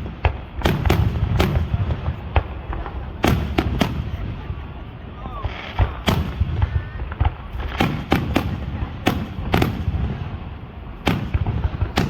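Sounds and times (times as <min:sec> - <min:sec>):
firework shells bursting: 0:05.4 - 0:09.9.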